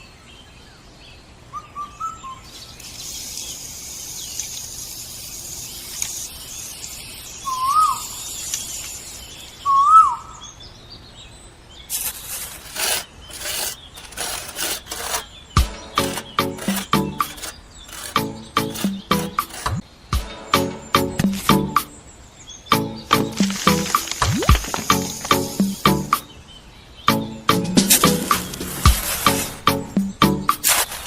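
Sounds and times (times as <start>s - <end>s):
rough scraping noises: 11.9s - 15.3s, 16.0s - 19.8s.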